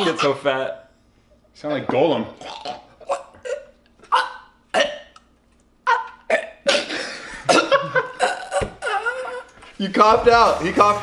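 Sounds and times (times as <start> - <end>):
man coughing: 6.3 - 8.8.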